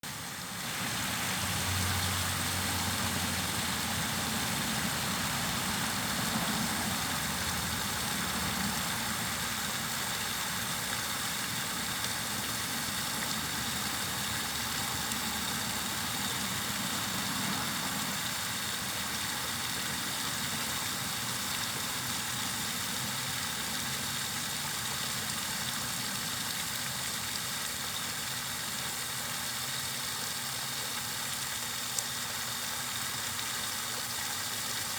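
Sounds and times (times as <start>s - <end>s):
white noise hiss: 0.0s - 34.9s.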